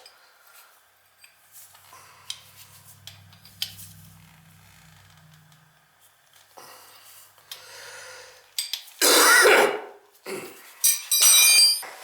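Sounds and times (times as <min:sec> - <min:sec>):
metal tools clinking: 0:10.8 - 0:11.9
sharp ringing metal clink: 0:10.9 - 0:11.9.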